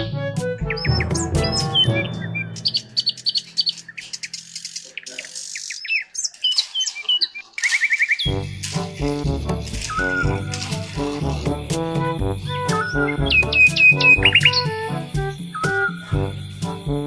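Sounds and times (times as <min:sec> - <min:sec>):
background music: 0:00.0 - 0:04.0, 0:08.3 - 0:17.0
birds chirping and trilling: 0:00.8 - 0:08.3.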